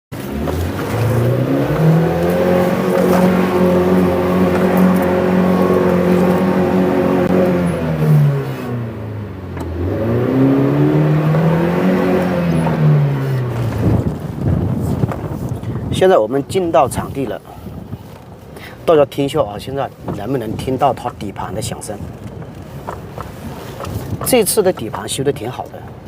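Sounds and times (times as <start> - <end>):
car engine accelerating: 0.1 - 15.7.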